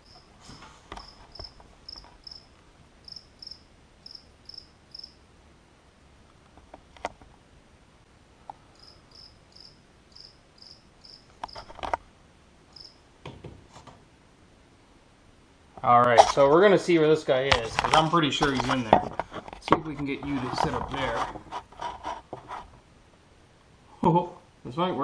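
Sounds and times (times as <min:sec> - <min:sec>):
cricket chirping: 0:00.0 - 0:05.3, 0:08.6 - 0:11.9, 0:12.7 - 0:13.1.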